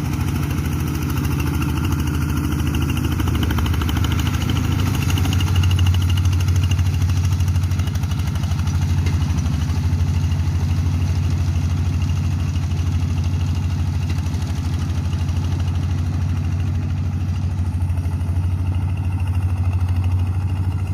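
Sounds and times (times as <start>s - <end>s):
tractor engine running: 0.0s - 20.9s.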